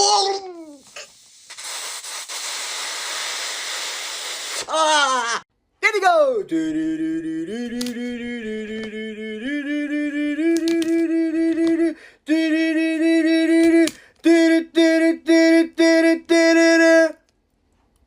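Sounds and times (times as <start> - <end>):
person humming wordless tune: 6.4 - 17.2.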